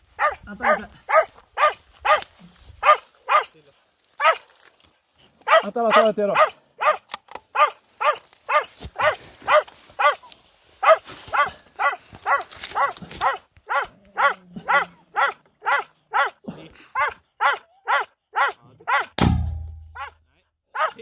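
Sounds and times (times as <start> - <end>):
dog barking rapidly: 0.2 - 2.2, 2.8 - 3.6, 4.2 - 4.4, 5.5 - 10.2, 10.8 - 16.4, 17.0 - 19.2, 20.0 - 20.2, 20.8 - 21.0.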